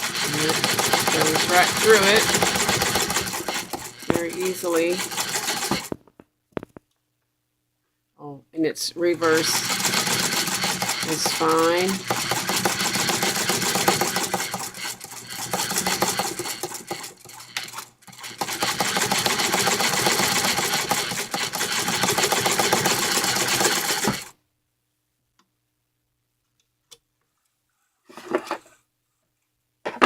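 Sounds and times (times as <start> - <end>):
sewing machine rattling: 0.0 - 6.0, 9.1 - 24.3.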